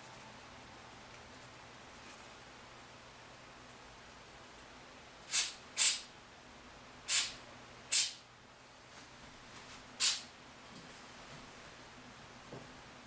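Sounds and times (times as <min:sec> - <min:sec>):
aerosol spray hissing bursts: 0:05.3 - 0:06.1, 0:07.1 - 0:08.2, 0:10.0 - 0:10.2.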